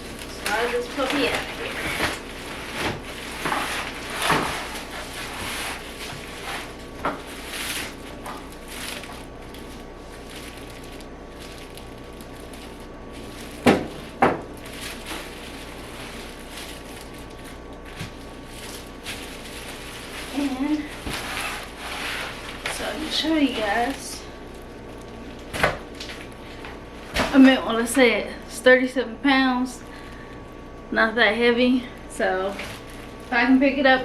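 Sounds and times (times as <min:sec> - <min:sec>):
packaging scraping and rubbing: 0:00.2 - 0:26.6.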